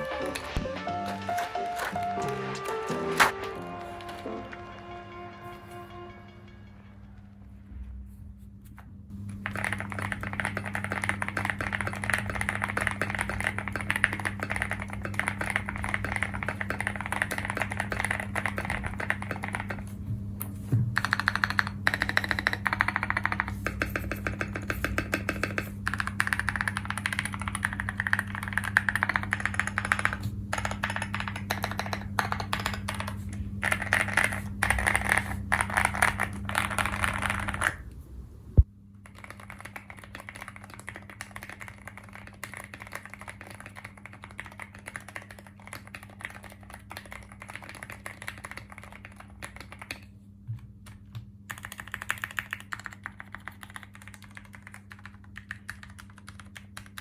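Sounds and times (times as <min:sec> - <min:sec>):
steady low hum: 0:00.0 - 0:40.6
fast typing on mechanical keyboard: 0:09.3 - 0:20.0, 0:21.0 - 0:37.8, 0:39.0 - 0:50.1, 0:50.9 - 0:57.0.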